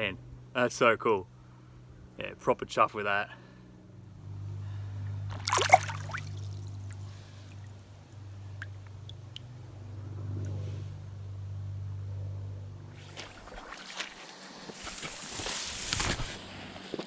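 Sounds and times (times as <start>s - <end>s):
steady low hum: 0.0s - 17.0s
water splash: 5.3s - 9.5s, 12.9s - 16.3s.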